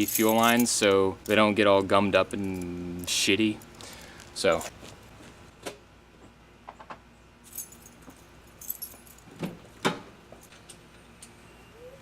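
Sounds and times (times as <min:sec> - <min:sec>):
keys jangling: 0:00.0 - 0:01.4, 0:02.3 - 0:03.8, 0:07.5 - 0:09.3.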